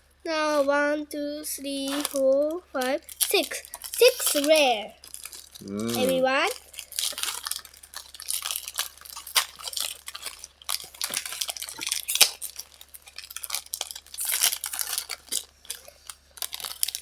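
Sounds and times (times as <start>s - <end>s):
foil wrappers crinkling: 0.2s - 17.0s.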